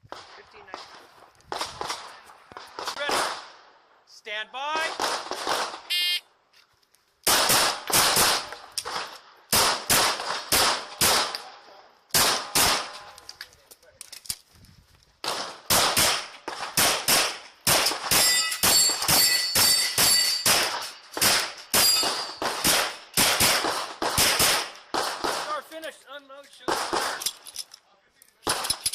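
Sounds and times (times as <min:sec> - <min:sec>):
pistol shots: 0:00.1 - 0:03.6, 0:04.8 - 0:05.9, 0:07.3 - 0:11.5, 0:12.1 - 0:13.1, 0:15.2 - 0:25.6, 0:26.7 - 0:27.3, 0:28.4 - 0:28.8
steel targets ringing: 0:18.1 - 0:20.6, 0:21.8 - 0:22.4.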